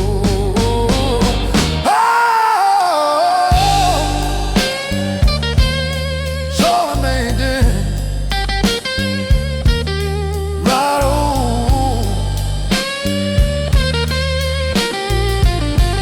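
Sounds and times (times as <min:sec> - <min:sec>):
bass: 0:00.0 - 0:02.0, 0:03.5 - 0:16.0
drum kit beat: 0:00.0 - 0:02.0, 0:03.5 - 0:16.0
lead guitar bending notes: 0:03.6 - 0:06.6.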